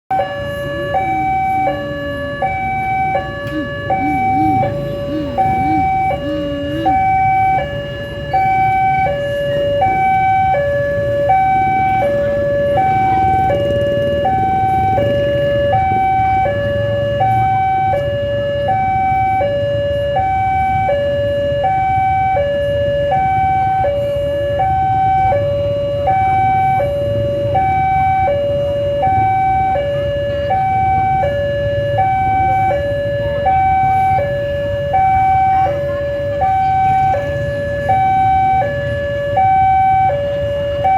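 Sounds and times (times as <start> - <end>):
level crossing two-tone alarm: 0.1 - 40.9.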